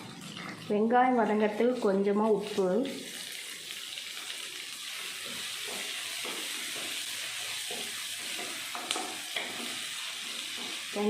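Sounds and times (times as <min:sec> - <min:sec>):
onions sizzling in a pan: 0:00.0 - 0:11.0
spatula clicking against pan: 0:05.4 - 0:09.8.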